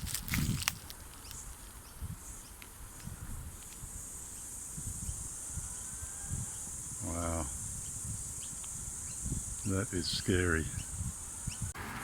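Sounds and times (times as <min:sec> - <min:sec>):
insects chorus: 0:00.0 - 0:12.0.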